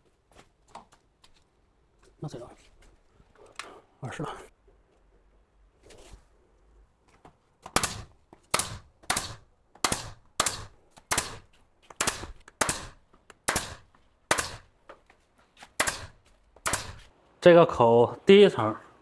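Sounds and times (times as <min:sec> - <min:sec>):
nail gun firing: 0:07.7 - 0:14.7, 0:15.8 - 0:17.1.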